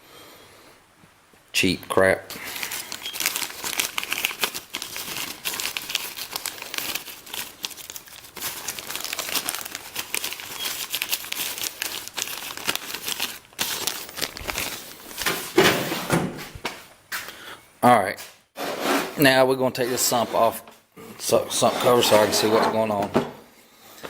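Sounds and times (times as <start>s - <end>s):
packaging crinkling: 2.3s - 15.6s.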